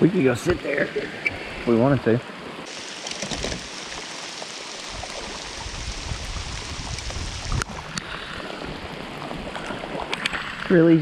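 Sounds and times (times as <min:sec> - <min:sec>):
rain falling on river: 0:02.6 - 0:10.5.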